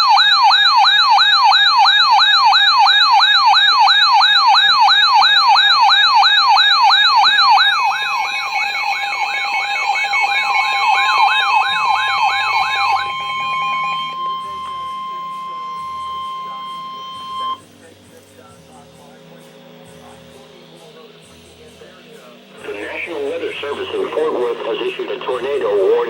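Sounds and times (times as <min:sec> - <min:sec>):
electronic siren yelping: 0:00.0 - 0:17.6.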